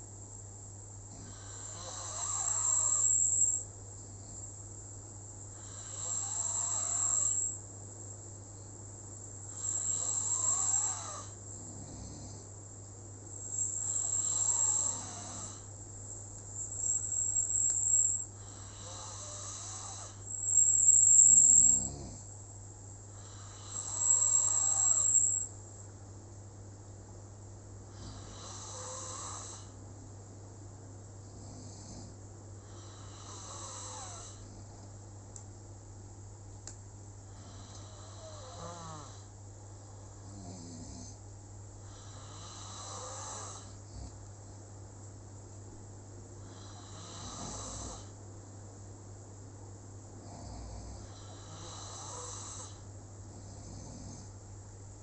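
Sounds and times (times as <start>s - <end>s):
steady low hum: 0.0s - 55.0s
person snoring: 1.1s - 3.6s, 5.5s - 7.6s, 9.5s - 12.5s, 13.5s - 15.7s, 17.4s - 22.3s, 23.1s - 25.5s, 27.9s - 29.8s, 31.3s - 34.7s, 37.3s - 39.3s, 41.8s - 44.2s, 46.4s - 48.2s, 50.2s - 54.3s.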